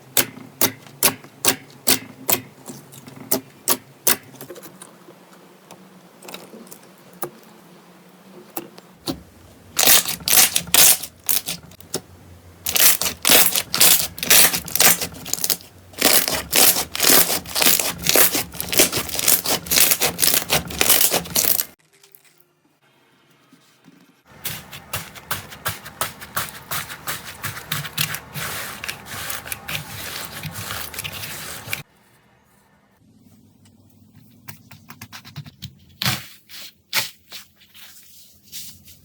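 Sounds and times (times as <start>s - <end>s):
slime clicking and crackling: 9.8s - 11.6s, 12.7s - 22.4s.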